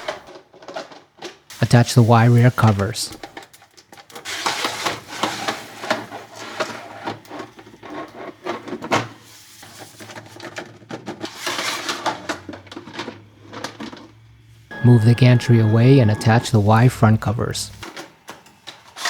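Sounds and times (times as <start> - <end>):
plastic covers clicking: 0.0 - 1.5.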